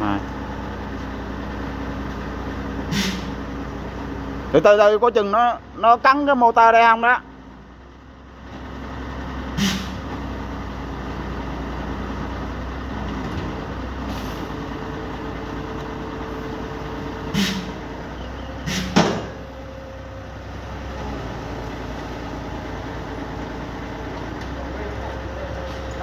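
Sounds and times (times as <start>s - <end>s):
truck engine running: 0.0s - 26.0s
sharp knocks: 18.8s - 19.4s.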